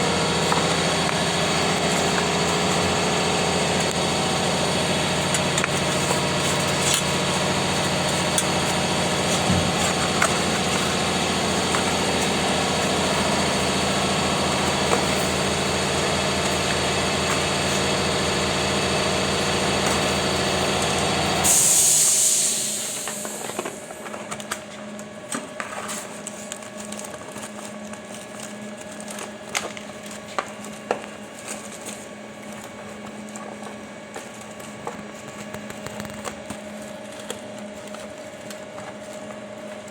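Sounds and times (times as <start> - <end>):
machine hum: 0.0 - 39.9
loud hiss burst: 21.4 - 23.5.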